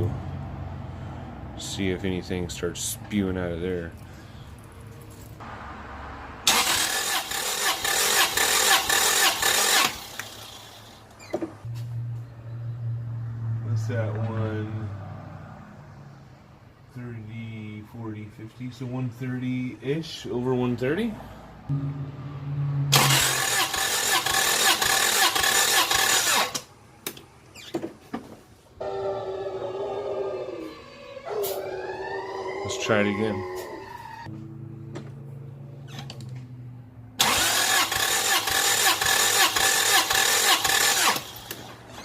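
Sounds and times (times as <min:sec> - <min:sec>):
engine cranking on starter: 0:06.4 - 0:11.1, 0:22.9 - 0:26.7, 0:37.2 - 0:42.0.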